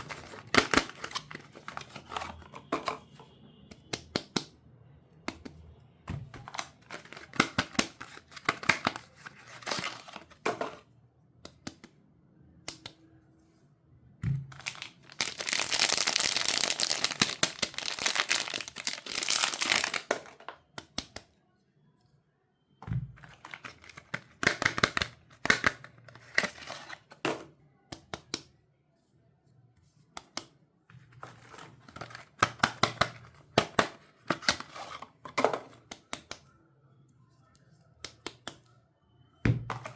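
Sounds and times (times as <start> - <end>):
wrappers crinkling and tearing: 14.6 - 20.2.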